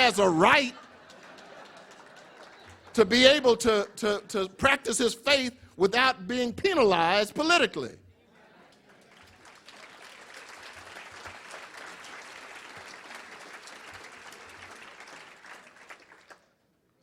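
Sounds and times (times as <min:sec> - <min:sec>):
audience applauding: 0:00.0 - 0:03.9, 0:08.6 - 0:16.6.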